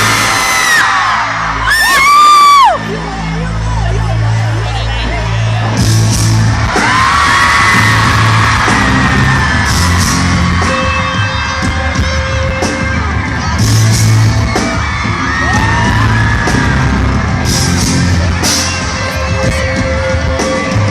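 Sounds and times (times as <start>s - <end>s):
crowd yelling and singing along: 0.0s - 20.9s
pop-rock band playing live: 4.4s - 20.9s.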